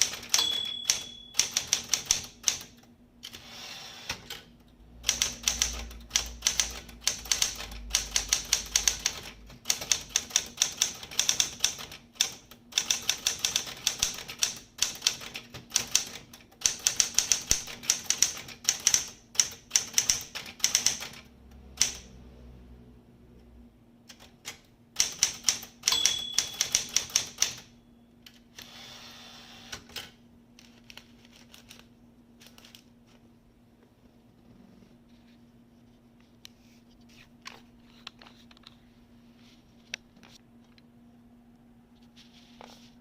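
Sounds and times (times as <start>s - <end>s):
typewriter key strikes: 0.0s - 2.8s, 25.0s - 27.7s.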